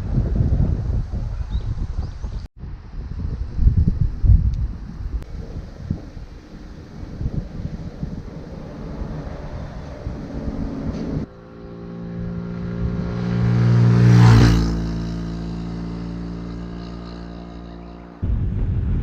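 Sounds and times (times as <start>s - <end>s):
wind rumble on microphone: 0.0s - 19.0s
vehicle passing by: 5.4s - 18.2s.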